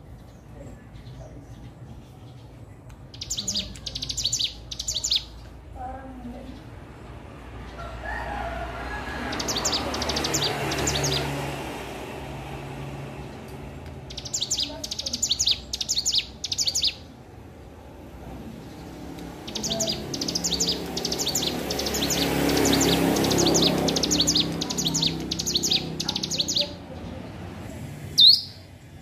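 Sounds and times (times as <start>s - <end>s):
bird chattering song: 0.0s - 5.6s, 9.3s - 11.5s, 13.9s - 17.4s, 18.6s - 27.4s, 28.2s - 28.7s.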